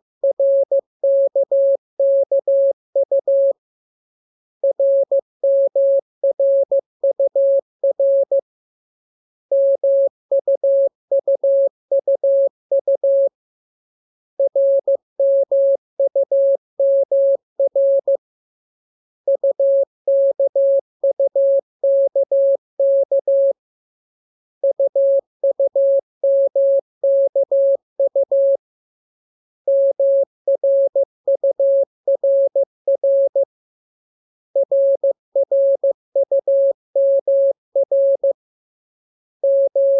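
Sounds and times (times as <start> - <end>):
morse code beeps: 34.6 - 38.4, 39.4 - 39.9.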